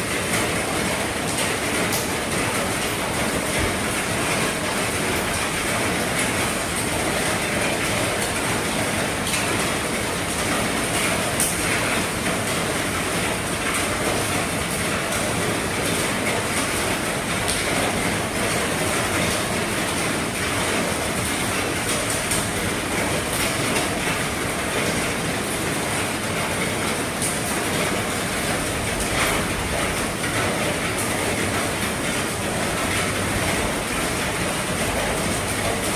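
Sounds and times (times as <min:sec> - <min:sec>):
heavy rain on a roof: 0:00.0 - 0:35.9
sharp raindrop ticks: 0:10.3 - 0:12.8, 0:17.4 - 0:24.2.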